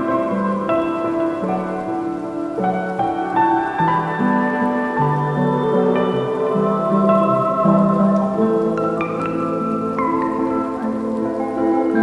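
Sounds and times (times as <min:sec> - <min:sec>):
faint patter of rain: 0:00.0 - 0:12.0
gentle instrumental music: 0:00.0 - 0:12.0.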